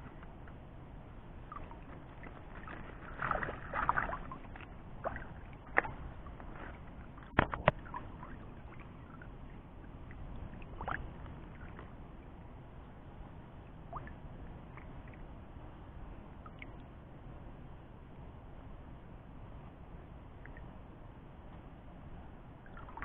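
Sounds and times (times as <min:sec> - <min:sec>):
water sloshing and splashing: 0:00.0 - 0:13.0, 0:22.6 - 0:23.0.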